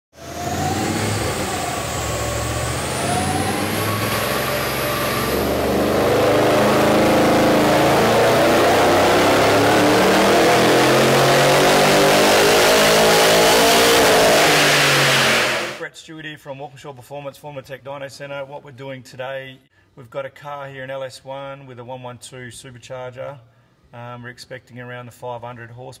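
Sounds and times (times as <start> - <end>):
engine running hard: 0.2 - 15.8.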